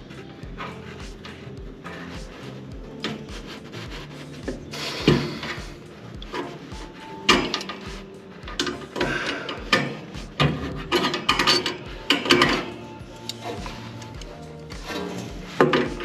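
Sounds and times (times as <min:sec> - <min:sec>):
background music with steady beat: 0:00.0 - 0:16.0
hand tools clinking on metal: 0:06.4 - 0:16.0.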